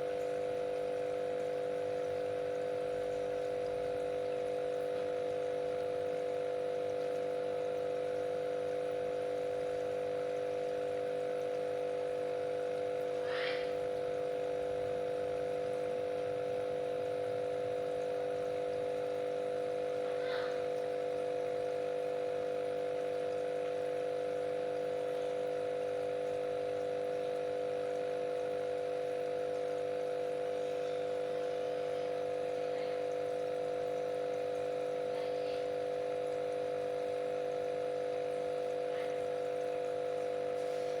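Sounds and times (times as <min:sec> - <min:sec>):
aquarium pump humming: 0:00.0 - 0:41.0
faint water drips: 0:00.0 - 0:41.0
water trickling: 0:00.0 - 0:41.0.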